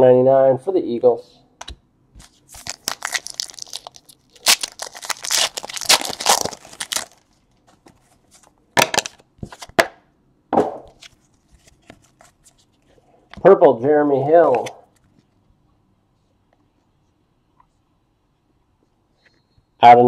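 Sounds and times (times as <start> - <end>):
foil wrapper tearing and crinkling: 2.2 - 7.3.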